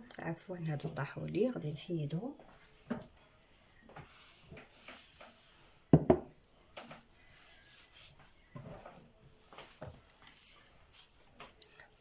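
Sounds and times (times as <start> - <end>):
kitchen handling knocks and rubs: 4.0 - 7.0.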